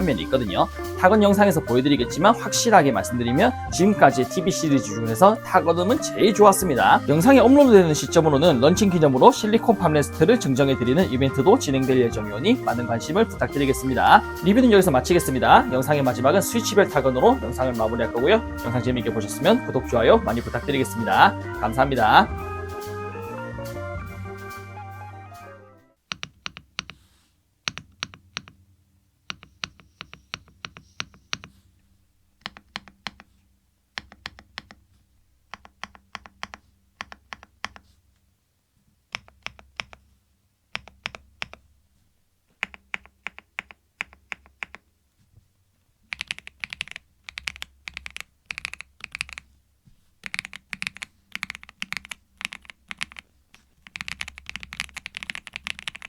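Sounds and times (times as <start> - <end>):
mechanical keyboard typing: 26.1 - 27.0, 27.7 - 28.6, 29.3 - 31.5, 32.4 - 33.3, 34.0 - 34.8, 35.5 - 37.8, 39.1 - 40.0, 40.8 - 41.6, 42.6 - 44.8, 46.1 - 49.4, 50.2 - 56.0.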